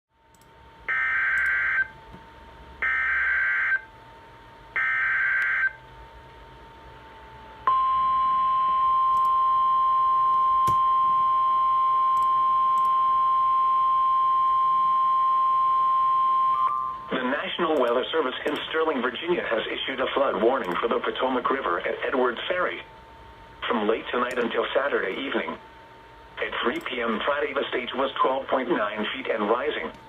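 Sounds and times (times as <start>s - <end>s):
steady warning alarm tone: 0.8s - 2.0s, 2.8s - 4.0s, 4.7s - 5.8s, 7.4s - 17.9s.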